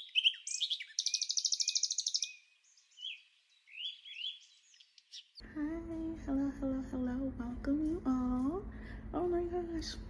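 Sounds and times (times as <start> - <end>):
small bird chirping and trilling: 0.0 - 5.4.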